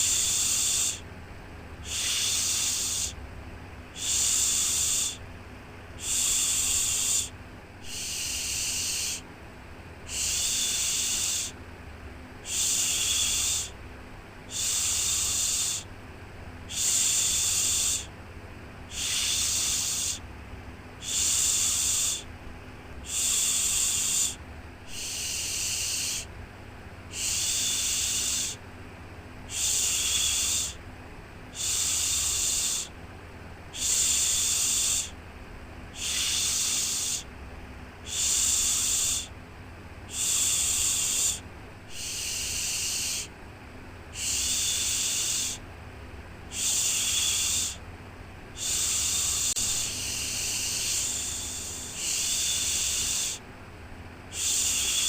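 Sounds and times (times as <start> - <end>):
faint low hum: 0.0 - 55.0
person shushing: 1.8 - 3.2, 6.0 - 9.2, 10.1 - 11.6, 12.4 - 13.8, 16.7 - 18.1, 18.9 - 20.2, 21.0 - 22.3, 23.0 - 26.3, 36.0 - 37.3, 40.1 - 43.3, 44.2 - 45.6, 46.5 - 47.8, 48.6 - 53.4, 54.3 - 55.0.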